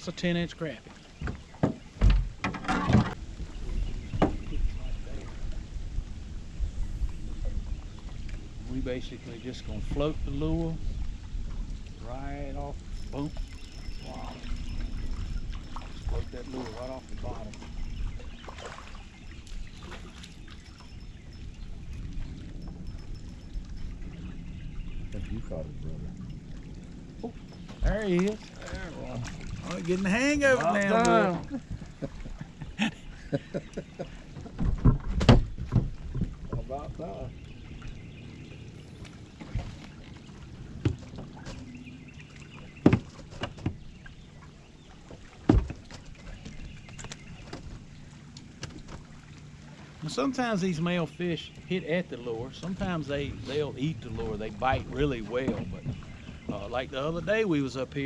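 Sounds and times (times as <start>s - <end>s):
water lapping against boat hull: 0.0s - 58.0s
knocks and thumps on boat: 1.1s - 3.2s, 4.0s - 4.7s, 34.1s - 37.2s, 39.0s - 41.8s, 42.6s - 44.2s, 45.0s - 48.0s, 54.1s - 57.3s.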